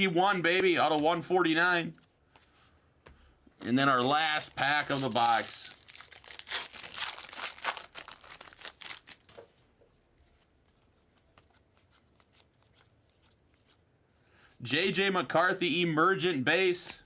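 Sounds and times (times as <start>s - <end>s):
cards clicking: 3.6s - 9.4s
foil pack tearing and crinkling: 3.8s - 9.4s.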